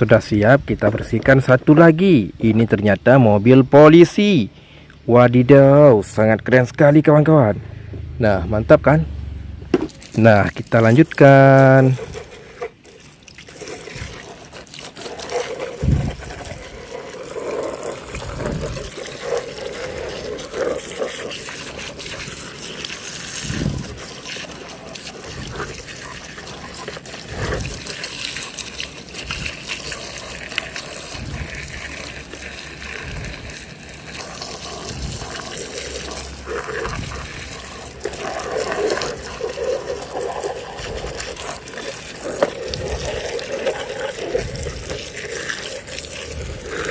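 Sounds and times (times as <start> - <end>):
running water splashing: 9.7 - 46.9.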